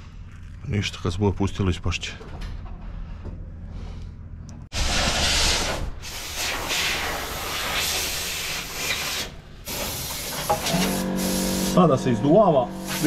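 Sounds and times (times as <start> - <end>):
air blower hissing: 4.8 - 13.0.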